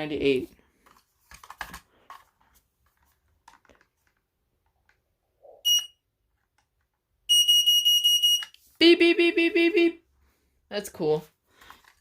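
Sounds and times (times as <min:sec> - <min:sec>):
smoke alarm beep: 0:05.6 - 0:06.0, 0:07.3 - 0:08.6.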